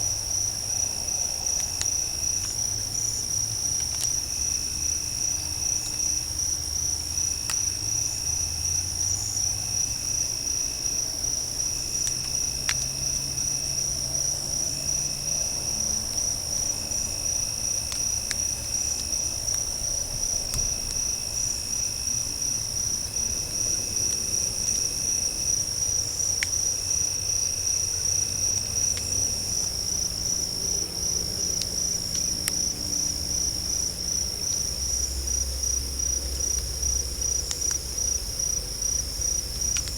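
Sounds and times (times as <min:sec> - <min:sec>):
crickets trilling: 0:00.0 - 0:39.9
low buzzing insect call: 0:00.0 - 0:39.9
faint sharp clicks: 0:39.6 - 0:39.9.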